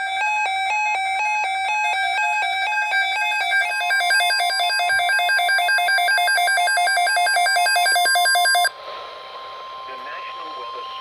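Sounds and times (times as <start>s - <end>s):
electronic alert beeping: 1.9s - 8.7s.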